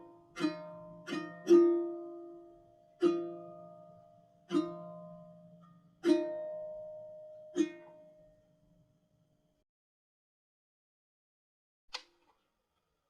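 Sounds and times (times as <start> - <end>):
plucked-string chords: 0.0 - 8.2.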